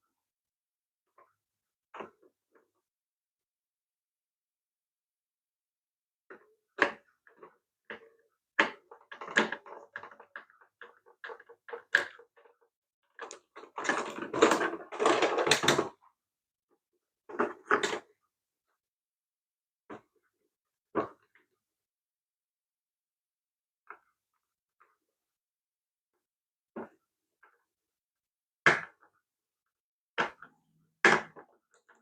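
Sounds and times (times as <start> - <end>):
plastic parts scraping and rattling: 6.3 - 16.0, 17.3 - 18.1.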